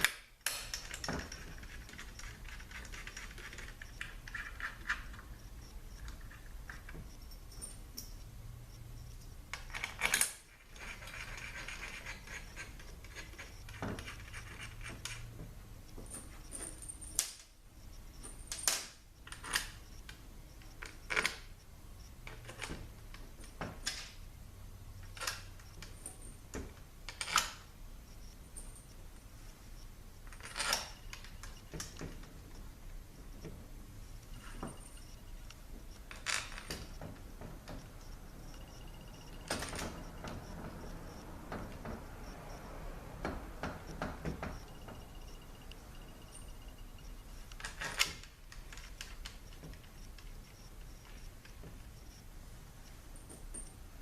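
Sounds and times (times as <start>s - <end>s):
small metal clicks and clinks: 0.0s - 8.3s, 25.0s - 27.7s, 30.3s - 32.6s.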